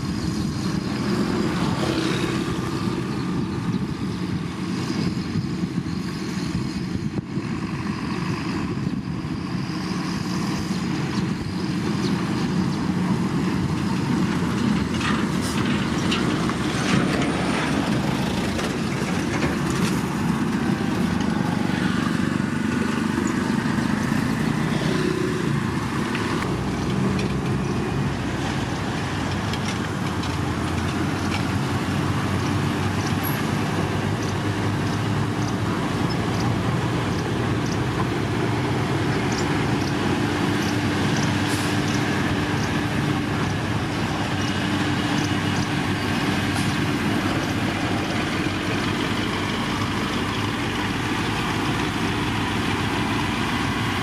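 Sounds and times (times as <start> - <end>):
heavy diesel machinery running: 0.0 - 54.0
light ticks: 34.2 - 38.1.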